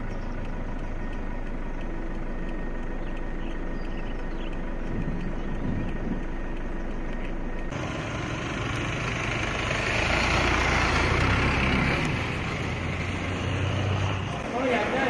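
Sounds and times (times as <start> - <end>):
vehicle passing by: 7.7 - 15.0.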